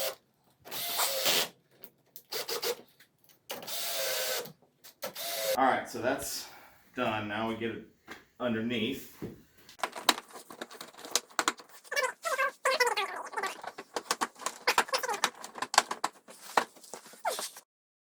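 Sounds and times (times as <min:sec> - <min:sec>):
clicks and knocks on plastic parts: 0:09.8 - 0:11.7, 0:13.5 - 0:16.7
high chattering voice-like sounds: 0:11.8 - 0:13.8, 0:14.4 - 0:15.4.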